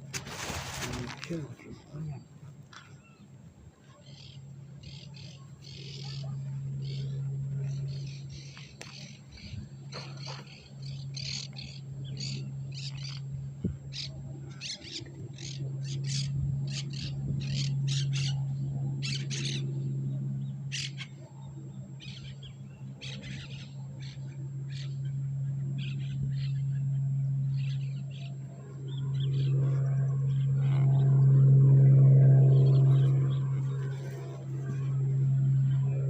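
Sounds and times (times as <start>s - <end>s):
steady low hum: 0.0s - 36.0s
birds chirping: 0.8s - 31.6s, 32.4s - 36.0s.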